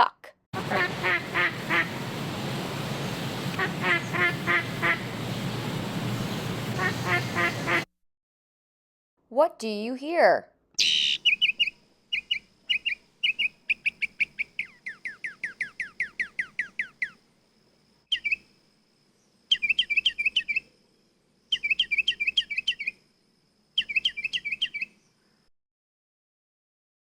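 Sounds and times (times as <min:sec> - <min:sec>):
songbird singing: 0:00.6 - 0:07.8, 0:10.8 - 0:17.2, 0:18.1 - 0:20.8, 0:21.4 - 0:25.5.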